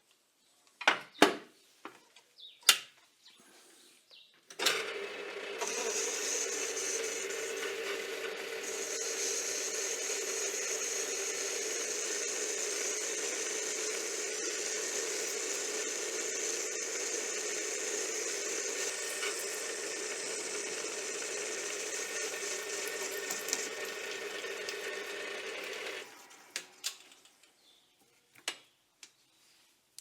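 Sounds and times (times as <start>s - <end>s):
metal lathe whine and hum: 4.8s - 26.8s.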